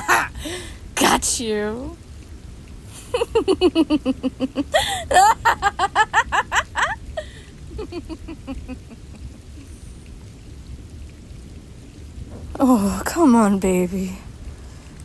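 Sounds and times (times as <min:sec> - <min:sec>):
woman laughing in a high voice: 0:03.0 - 0:09.3.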